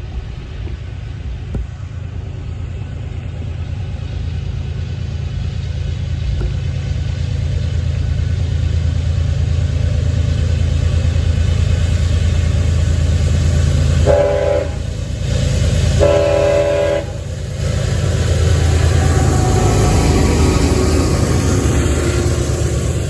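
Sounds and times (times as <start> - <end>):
diesel locomotive rumble: 0.0 - 23.0
locomotive air horn blasts: 14.0 - 14.9, 16.0 - 17.3.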